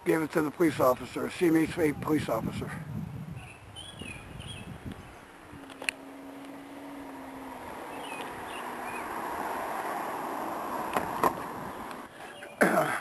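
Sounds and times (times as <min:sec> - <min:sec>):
passing vehicle hum: 0:04.6 - 0:12.5.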